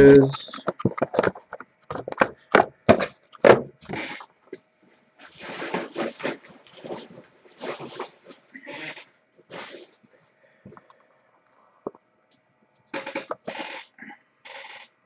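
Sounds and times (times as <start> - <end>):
knocks on cardboard boxes: 0.7 - 3.8
packaging rustling and scraping: 5.2 - 8.5.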